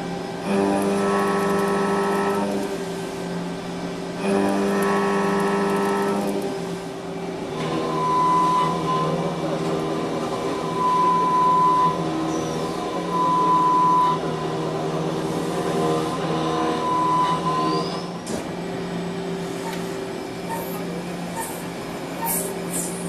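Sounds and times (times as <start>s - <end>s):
machine humming: 3.8s - 9.0s.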